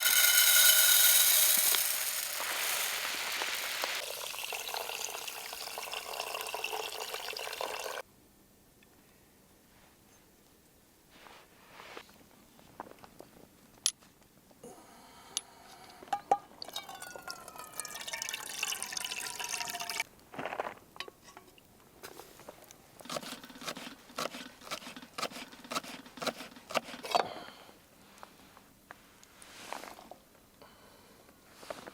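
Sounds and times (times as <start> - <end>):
water pouring into pot: 0.0 - 8.0, 16.6 - 20.0.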